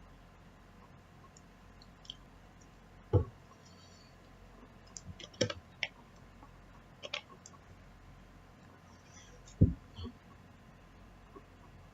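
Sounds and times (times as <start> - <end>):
dull thump: 3.1 - 3.4, 9.6 - 9.9.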